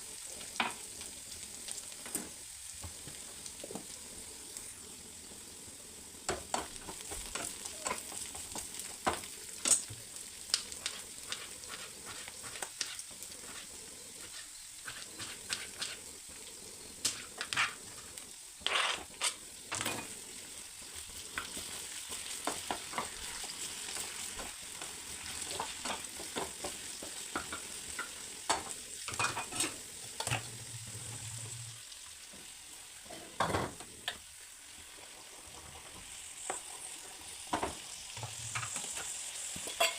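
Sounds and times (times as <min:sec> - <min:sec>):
food sizzling in oil: 0:00.0 - 0:39.9
spatula scraping a pan: 0:10.8 - 0:16.1, 0:16.8 - 0:20.2, 0:29.1 - 0:31.5, 0:39.6 - 0:39.9.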